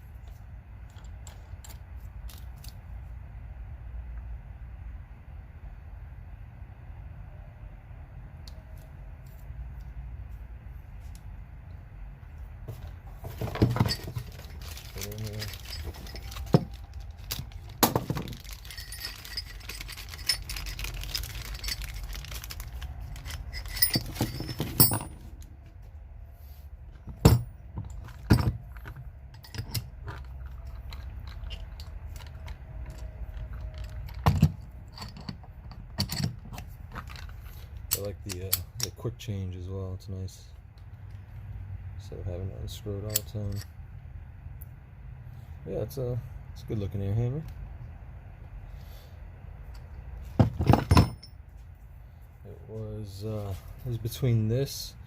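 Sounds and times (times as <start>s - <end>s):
rustling: 12.7s - 34.3s
metal tool parts clinking: 13.2s - 25.5s, 27.0s - 39.0s, 43.0s - 43.7s, 50.4s - 51.4s.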